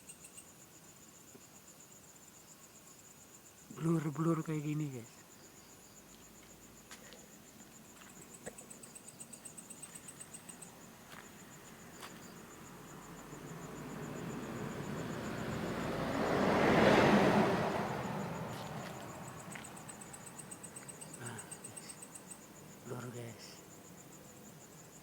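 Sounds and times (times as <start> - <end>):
crickets trilling: 0.0 - 25.0
vehicle passing: 11.4 - 21.7.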